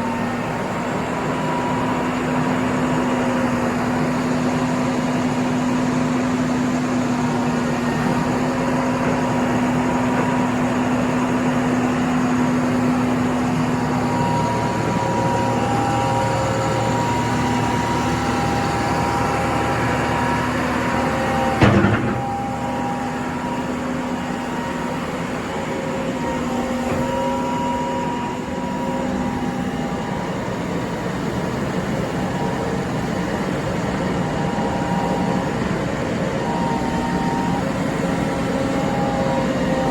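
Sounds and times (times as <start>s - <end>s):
diesel engine running: 0.0s - 39.9s
whining tones: 0.0s - 39.9s
sharp clunk: 21.6s - 22.3s.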